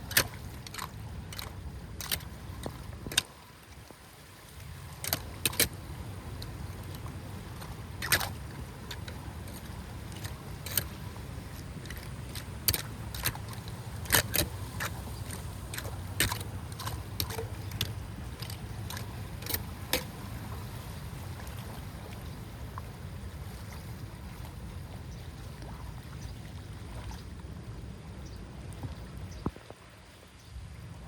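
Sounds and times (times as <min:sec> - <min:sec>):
flowing water rushing: 0:00.0 - 0:31.0
sharp clicks and knocks: 0:00.1 - 0:03.3, 0:05.0 - 0:05.8, 0:08.0 - 0:11.0, 0:11.8 - 0:20.1.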